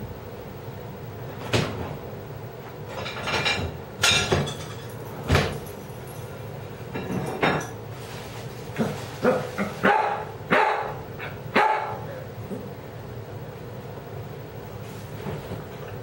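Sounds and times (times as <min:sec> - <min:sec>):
dog barking: 0:09.2 - 0:12.1.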